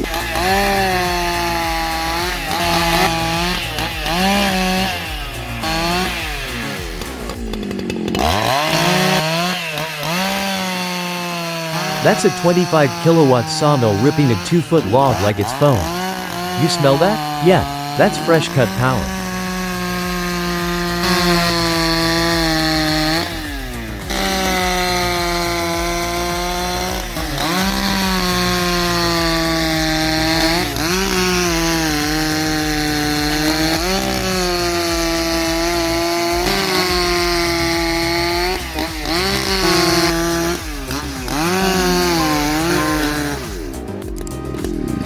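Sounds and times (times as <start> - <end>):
saw engine cutting log: 0.0 - 45.0.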